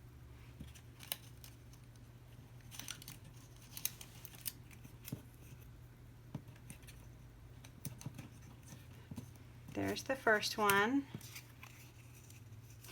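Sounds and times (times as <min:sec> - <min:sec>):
paper snaps and rustles: 0:00.7 - 0:02.0, 0:02.6 - 0:05.4.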